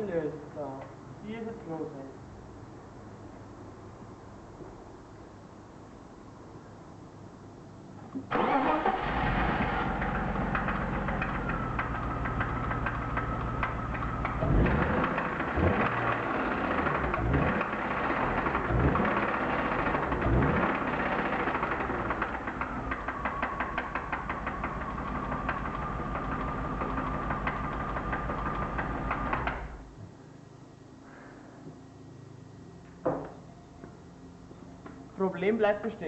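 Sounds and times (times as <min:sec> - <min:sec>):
car engine revving and idling: 0:08.3 - 0:29.8.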